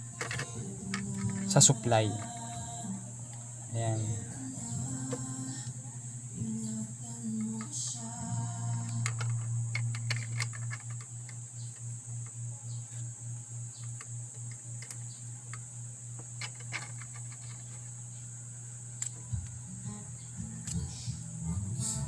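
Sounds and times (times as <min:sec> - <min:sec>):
faint high whine: 0:00.0 - 0:22.0
pulsing low hum: 0:00.0 - 0:22.0
clicks and taps handling wires: 0:00.2 - 0:02.6, 0:08.7 - 0:11.8, 0:16.2 - 0:17.9.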